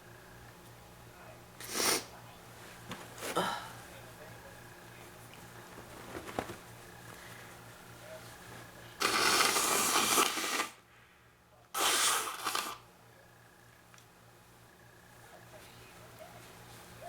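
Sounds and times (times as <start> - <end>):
woman blowing nose: 1.6 - 2.1, 9.0 - 10.8, 11.8 - 12.8.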